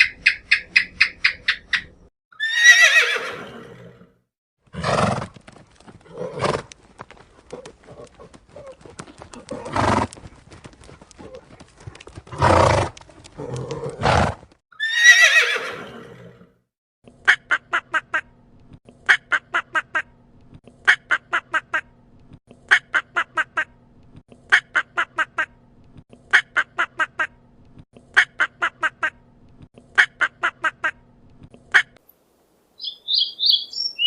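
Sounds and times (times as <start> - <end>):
horse whinny: 2.4 - 4.1, 12.4 - 16.5
horse snorting: 4.7 - 5.4, 7.4 - 10.2, 11.2 - 14.5.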